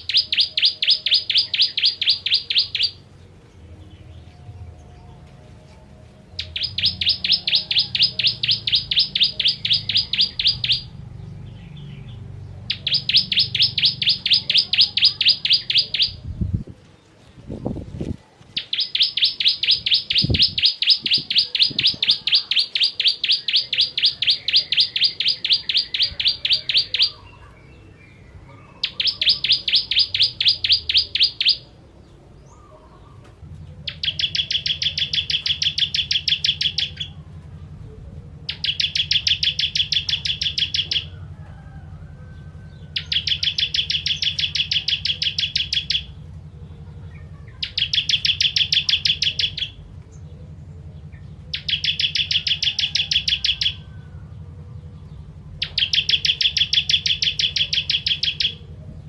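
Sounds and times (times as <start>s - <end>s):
bird singing high sharp notes: 0.0s - 3.0s, 6.4s - 16.4s, 18.6s - 28.1s, 28.7s - 31.7s, 33.9s - 37.2s, 38.5s - 41.1s, 43.0s - 46.2s, 47.6s - 49.8s, 51.5s - 53.8s, 55.6s - 58.7s.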